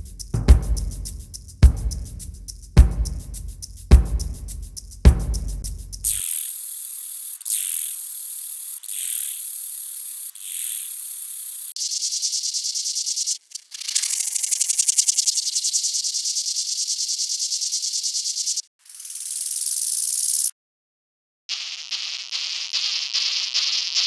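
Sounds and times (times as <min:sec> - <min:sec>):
insect pulsed trill: 0:00.0 - 0:20.5, 0:21.5 - 0:24.0
high dense insect buzzing: 0:05.8 - 0:20.5, 0:21.5 - 0:24.0.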